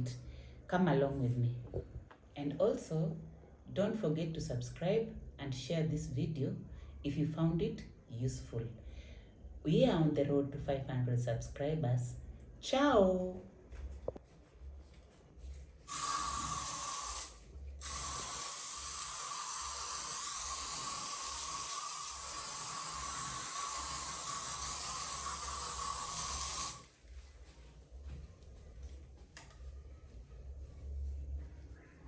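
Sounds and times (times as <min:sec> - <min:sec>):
steady hiss: 0:15.8 - 0:27.1.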